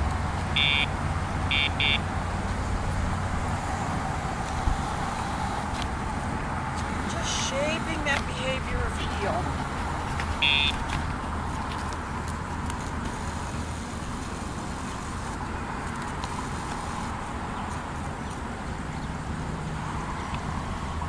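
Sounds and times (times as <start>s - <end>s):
low traffic rumble: 0.0s - 21.0s.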